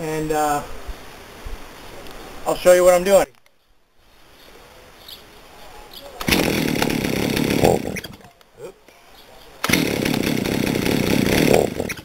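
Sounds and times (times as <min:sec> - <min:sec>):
chainsaw revving: 0:06.2 - 0:08.3, 0:09.6 - 0:12.0.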